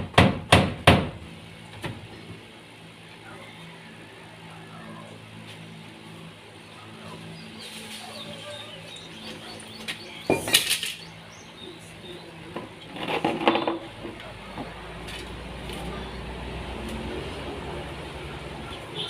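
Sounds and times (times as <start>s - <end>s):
hard objects clattering: 12.9s - 14.2s.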